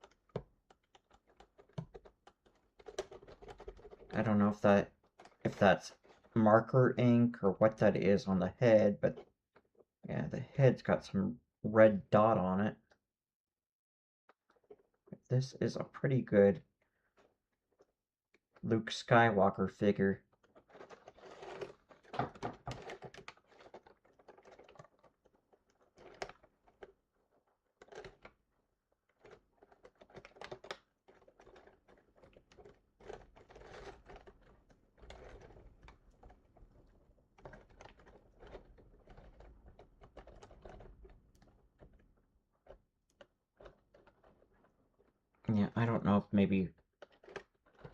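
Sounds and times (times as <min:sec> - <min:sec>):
plastic toy clicking and rustling: 0:00.0 - 0:04.2, 0:20.3 - 0:45.2, 0:46.8 - 0:47.9.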